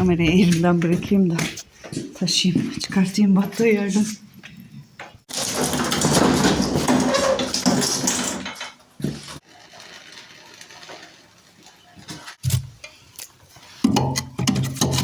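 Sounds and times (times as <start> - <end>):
wheelbarrow knocking down: 5.3 - 9.4
wheelbarrow rattling and clattering: 5.3 - 12.4.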